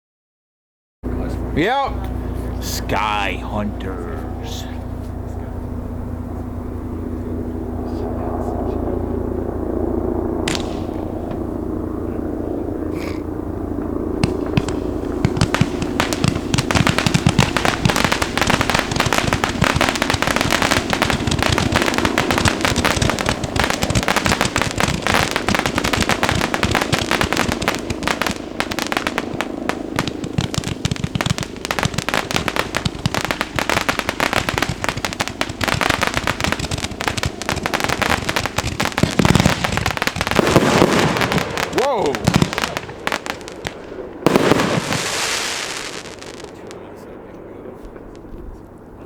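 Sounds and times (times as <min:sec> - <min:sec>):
firework cake firing rapid shots: 0:10.4 - 0:11.1, 0:14.2 - 0:46.6.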